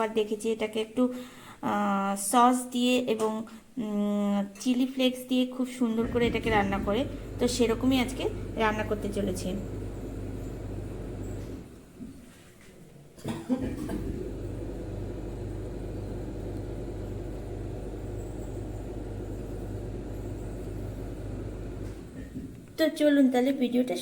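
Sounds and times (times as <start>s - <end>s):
low motor hum: 6.0s - 12.2s, 13.2s - 22.8s.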